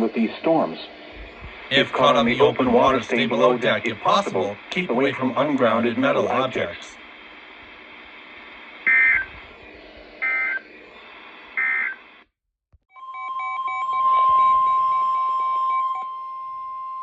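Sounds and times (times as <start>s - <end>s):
steady attention tone: 12.9s - 17.0s.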